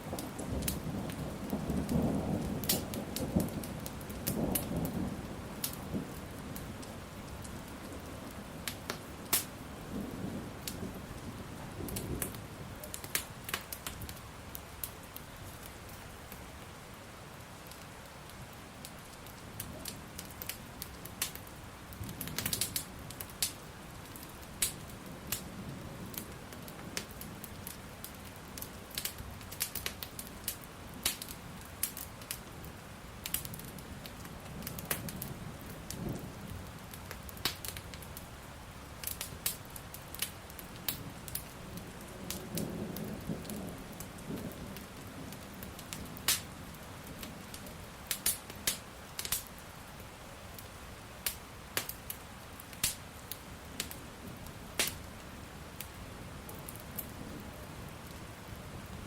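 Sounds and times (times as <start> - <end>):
rain hissing: 0.0 - 59.0
wood fire crackling and popping: 0.0 - 59.0.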